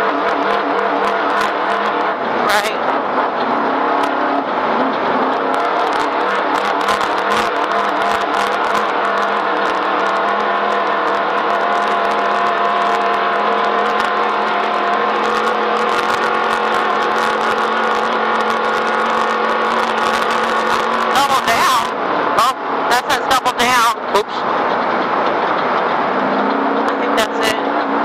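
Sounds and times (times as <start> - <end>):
vehicle engine running hard: 0.0 - 28.0
vehicle rattling over rocks: 0.0 - 28.0.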